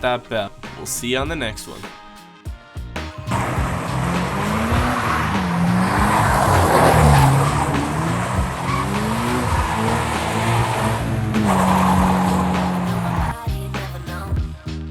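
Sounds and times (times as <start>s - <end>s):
car engine revving: 3.3s - 13.4s
tyres squealing: 3.3s - 13.4s.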